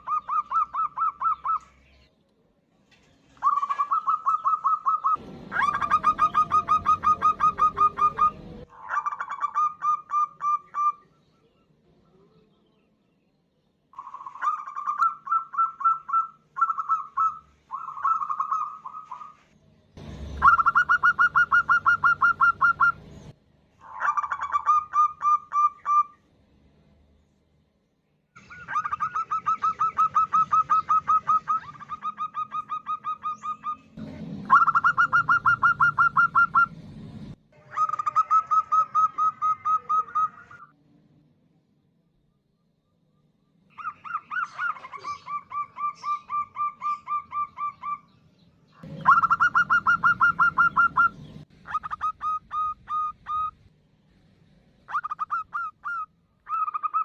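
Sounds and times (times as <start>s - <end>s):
dove calling staccato notes: 0.0s - 1.8s, 3.4s - 11.0s, 14.0s - 26.2s, 28.4s - 36.8s, 37.6s - 40.7s, 43.7s - 48.2s, 48.8s - 53.6s
low rumbling noise: 5.0s - 8.7s, 33.8s - 38.0s.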